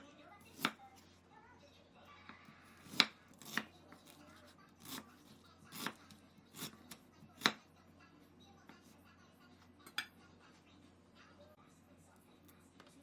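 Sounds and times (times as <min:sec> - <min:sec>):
knife chopping on cutting board: 0:02.8 - 0:04.2, 0:05.7 - 0:06.8.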